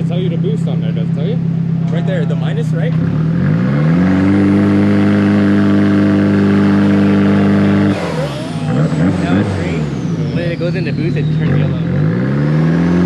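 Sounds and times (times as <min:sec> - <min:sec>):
car engine revving on dyno: 0:01.4 - 0:13.0.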